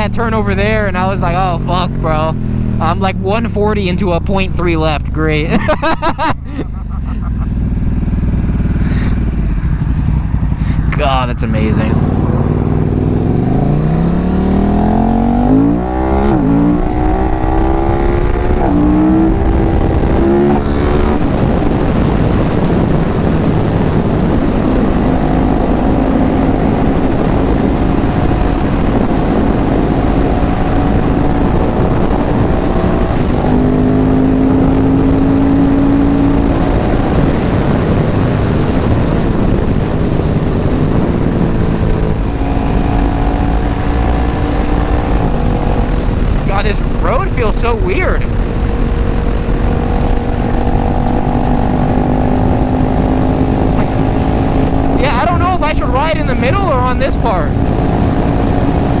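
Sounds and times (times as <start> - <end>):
motorcycle engine accelerating: 0.0 - 59.0
wind rush: 5.4 - 59.0.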